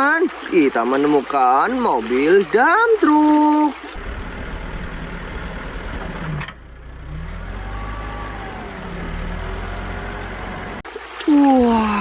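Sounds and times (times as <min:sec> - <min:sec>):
truck engine rumbling: 0:04.0 - 0:10.9.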